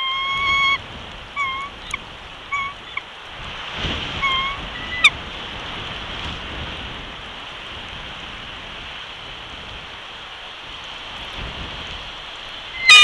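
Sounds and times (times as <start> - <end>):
bird calls: 0.0 - 3.1, 4.2 - 5.1, 12.7 - 13.0
rain: 0.0 - 13.0
wind: 0.0 - 13.0.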